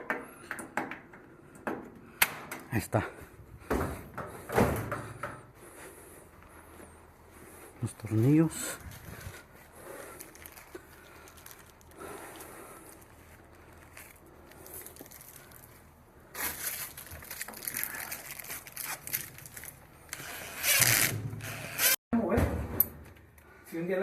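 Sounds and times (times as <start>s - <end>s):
crinkling and scraping handling: 8.0s - 22.0s.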